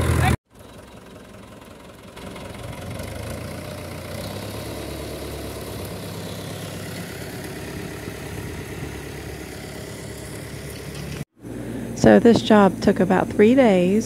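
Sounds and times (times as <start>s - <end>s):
engine idling drone: 0.0s - 14.0s.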